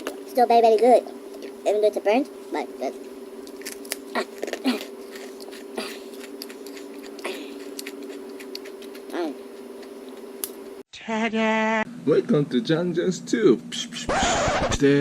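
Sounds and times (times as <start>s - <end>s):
steady low hum: 0.0s - 15.0s
chewing and mouth clicks: 3.4s - 10.7s.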